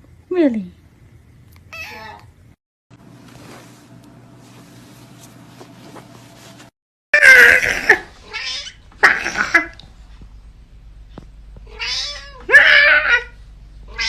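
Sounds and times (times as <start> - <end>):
cat yowling and meowing: 1.7 - 2.3, 7.2 - 9.9, 11.6 - 14.0.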